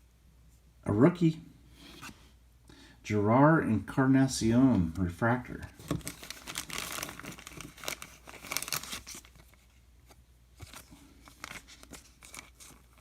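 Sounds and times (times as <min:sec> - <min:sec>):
trading cards crinkling: 0:05.6 - 0:13.0.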